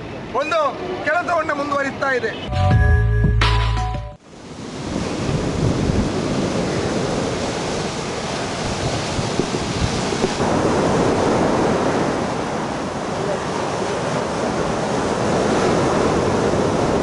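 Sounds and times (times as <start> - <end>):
sea waves breaking on shore: 4.2 - 17.0.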